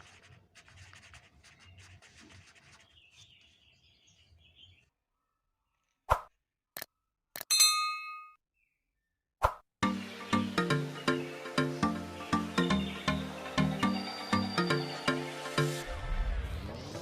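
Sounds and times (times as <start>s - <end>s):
bright ringing ding: 7.5s - 8.4s.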